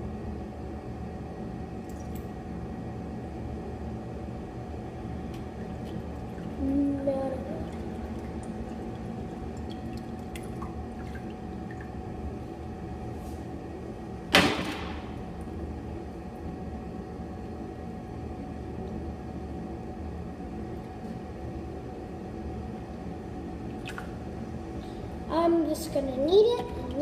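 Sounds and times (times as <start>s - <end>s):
faint hum: 0.0s - 27.0s
sharp loud knock: 14.3s - 15.2s.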